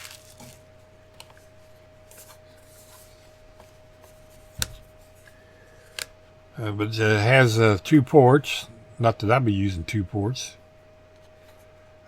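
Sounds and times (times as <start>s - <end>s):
rustling and handling objects: 0.0s - 6.1s.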